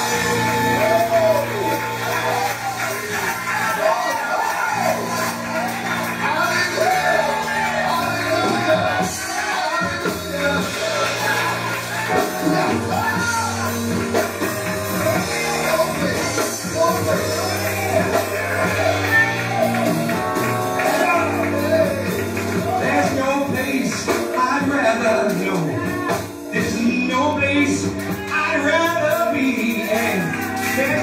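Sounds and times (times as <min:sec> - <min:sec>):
band accompaniment: 0:00.0 - 0:31.0
male vocal group singing gospel: 0:00.0 - 0:31.0.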